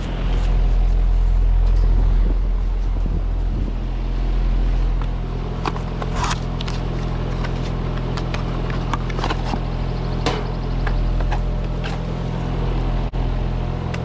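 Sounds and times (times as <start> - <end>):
heat pump electrical hum: 0.0 - 14.0
parts clicking and knocking: 5.0 - 12.1.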